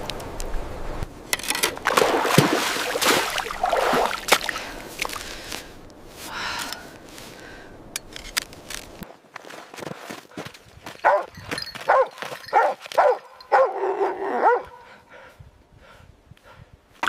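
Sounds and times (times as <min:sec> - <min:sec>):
dog barking: 0:11.0 - 0:14.9.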